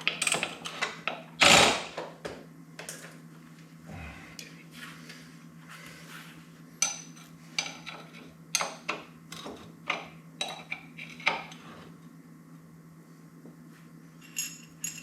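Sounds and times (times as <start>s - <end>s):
metal tools clinking: 14.2s - 15.0s.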